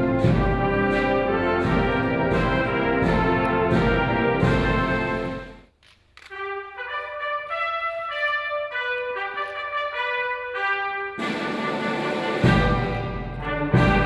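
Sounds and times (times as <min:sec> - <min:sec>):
brass band playing: 0:00.0 - 0:05.7, 0:06.3 - 0:14.0
brass melody of held notes: 0:06.4 - 0:14.0.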